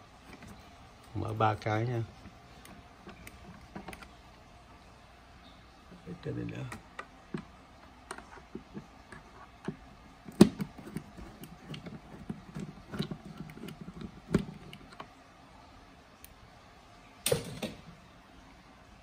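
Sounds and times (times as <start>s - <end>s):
screwdriver clicking on plastic: 7.0s - 15.1s.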